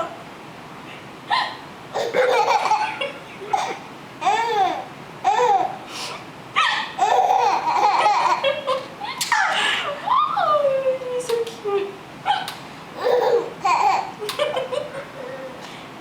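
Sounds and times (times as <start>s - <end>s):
baby laughing: 1.3s - 5.8s, 6.7s - 9.8s, 12.3s - 15.5s.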